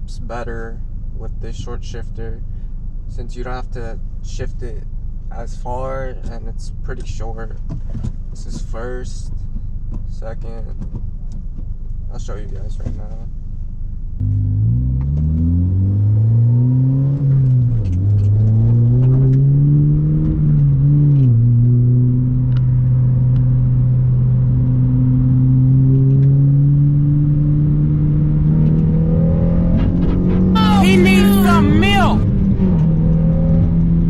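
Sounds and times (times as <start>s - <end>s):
car engine accelerating: 14.2s - 34.0s.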